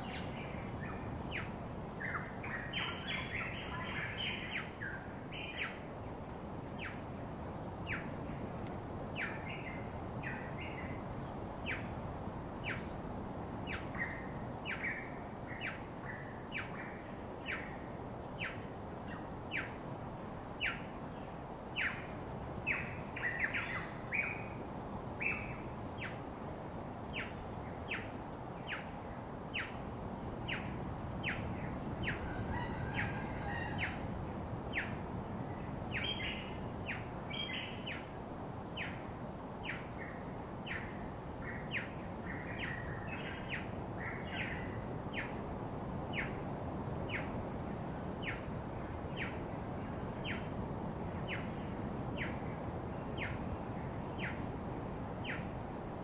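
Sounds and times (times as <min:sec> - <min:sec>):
birds twittering: 0:00.0 - 0:05.8, 0:30.5 - 0:34.1, 0:34.7 - 0:38.1
steady low background noise: 0:00.0 - 0:56.0.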